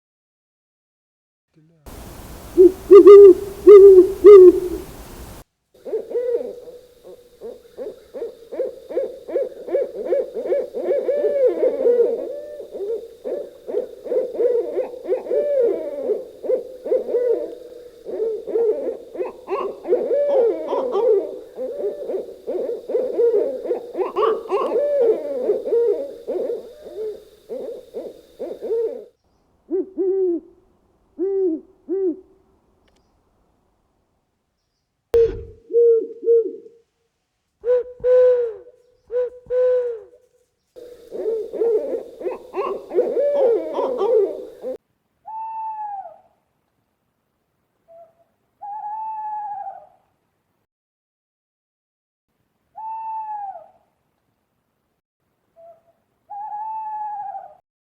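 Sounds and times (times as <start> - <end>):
owls hooting: 1.9 - 30.6, 31.2 - 32.4, 37.6 - 40.1, 40.8 - 46.2, 55.6 - 57.6.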